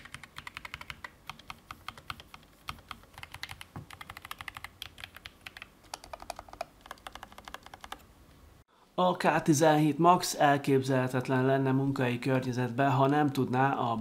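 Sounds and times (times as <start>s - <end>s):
mechanical keyboard typing: 0.0s - 8.0s.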